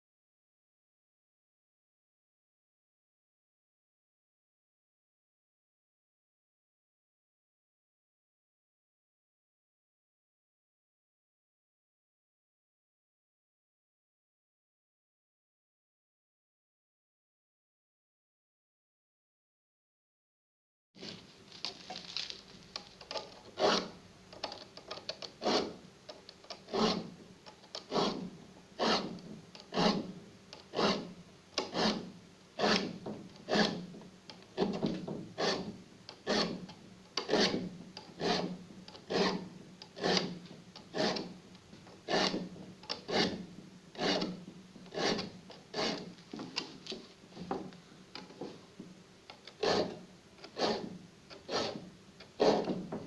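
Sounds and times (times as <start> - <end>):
hand file rasping on saw teeth: 23.0 - 25.8, 26.5 - 33.9, 34.6 - 34.8, 35.4 - 41.4, 42.0 - 46.2, 49.3 - 52.9.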